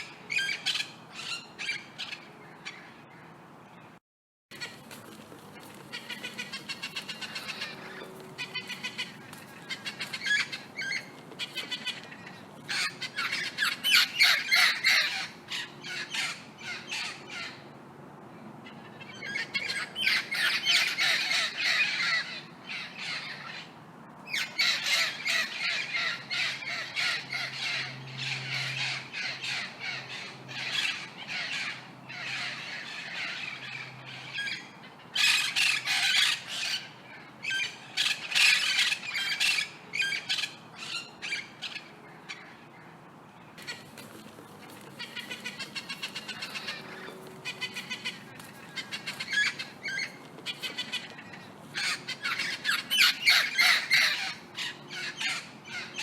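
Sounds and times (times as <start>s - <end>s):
parrots squawking: 5.9s - 17.6s, 19.0s - 23.7s, 24.3s - 42.6s, 45.0s - 56.0s.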